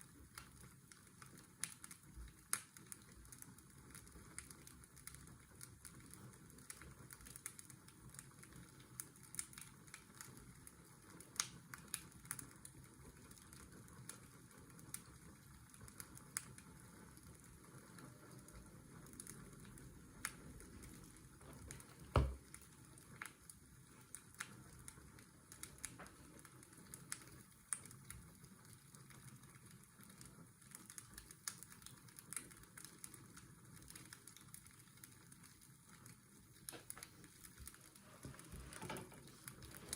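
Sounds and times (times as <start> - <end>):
wood fire crackling and popping: 0.0 - 39.9
washing machine whir: 36.8 - 39.9.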